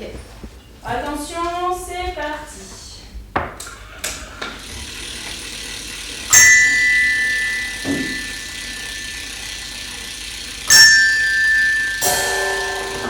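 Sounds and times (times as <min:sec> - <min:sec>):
metal object ringing like a bell: 0:06.3 - 0:09.9, 0:10.7 - 0:13.0.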